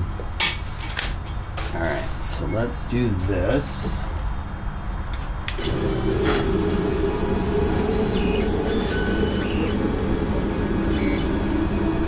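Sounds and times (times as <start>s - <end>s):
high motor whine: 5.5s - 12.0s
stepper motors droning: 5.5s - 12.0s.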